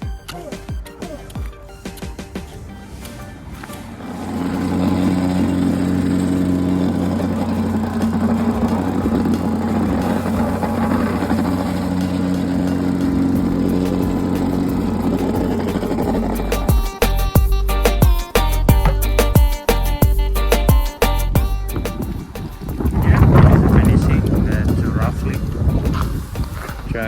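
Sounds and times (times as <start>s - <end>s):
plate compactor engine running: 2.4s - 20.0s.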